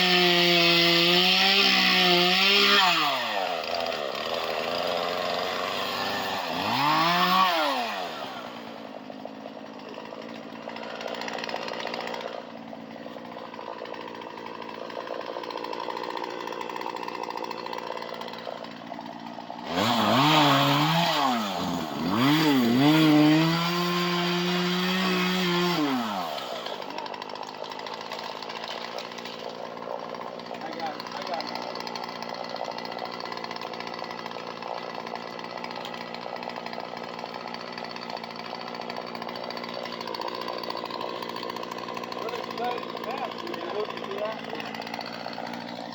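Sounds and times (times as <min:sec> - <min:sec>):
chainsaw engine revving: 0:00.0 - 0:45.9.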